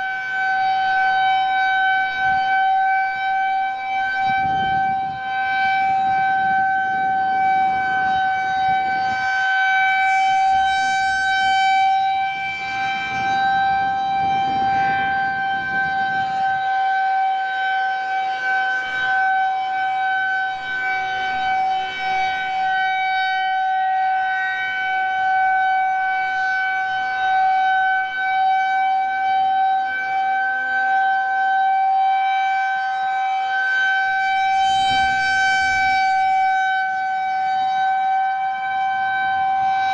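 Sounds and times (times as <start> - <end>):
rotating warning siren steady tone: 9.8 - 12.1, 34.2 - 36.8.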